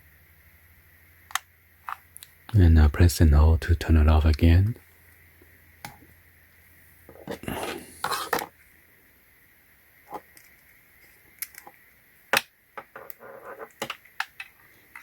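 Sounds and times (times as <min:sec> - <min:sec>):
rustle of handling plastic parts: 0:10.0 - 0:11.8, 0:12.9 - 0:15.0.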